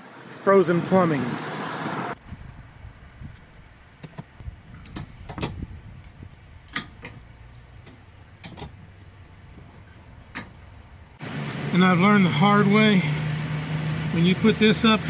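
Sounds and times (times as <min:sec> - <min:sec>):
road rumble inside vehicle: 0:01.2 - 0:15.0
cabin clicks and rattles: 0:06.7 - 0:09.1.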